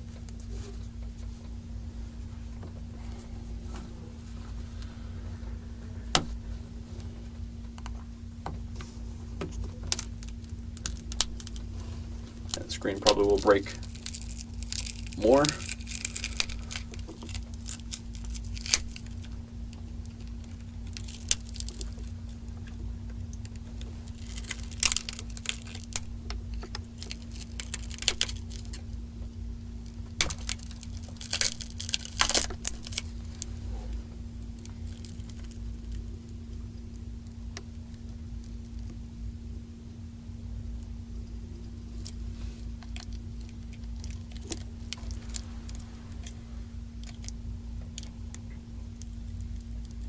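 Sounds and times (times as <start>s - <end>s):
low hum: 0.0s - 50.0s
glass cracking and clicking: 12.5s - 19.3s, 24.2s - 28.8s, 30.2s - 33.0s.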